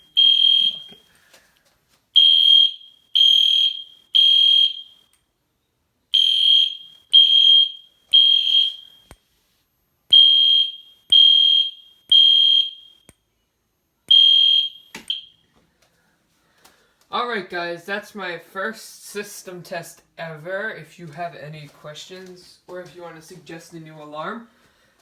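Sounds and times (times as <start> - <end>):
high alarm beeps: 0.0 - 1.0, 2.2 - 5.1, 6.2 - 9.1, 10.1 - 13.1, 14.1 - 15.4.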